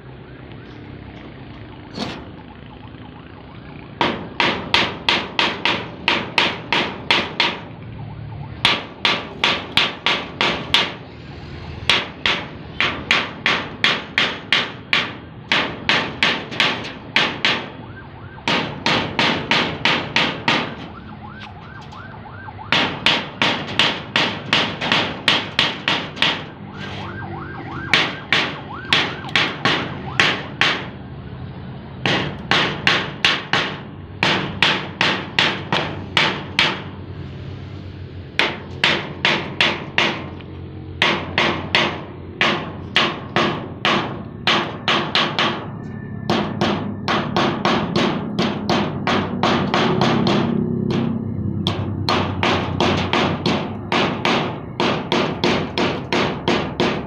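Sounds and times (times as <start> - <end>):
hammer striking metal: 4.0 - 7.7, 8.6 - 11.0, 11.8 - 17.8, 18.4 - 21.0, 22.7 - 26.6, 27.8 - 31.0, 32.0 - 36.9, 38.4 - 40.4, 41.0 - 57.0.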